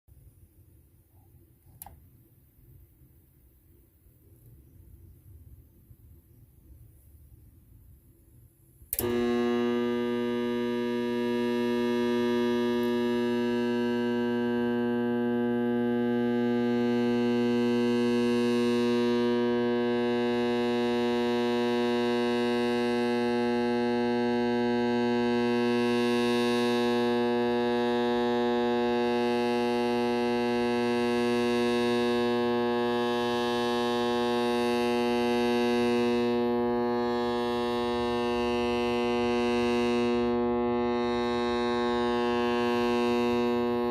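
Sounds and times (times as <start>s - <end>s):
blower motor electrical hum: 8.8s - 43.9s.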